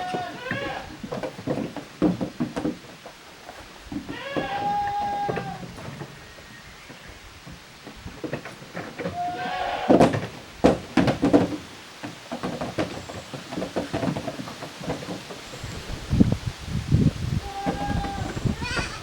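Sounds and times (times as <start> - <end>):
goat kid bleating: 0.0 - 0.9, 4.1 - 5.6, 9.1 - 9.9, 17.4 - 19.0
goats knocking and thumping: 0.0 - 16.4, 17.4 - 19.0.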